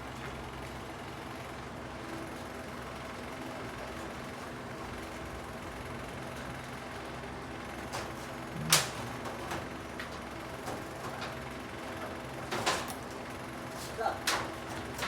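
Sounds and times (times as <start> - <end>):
engine-like hum: 7.9 - 9.7.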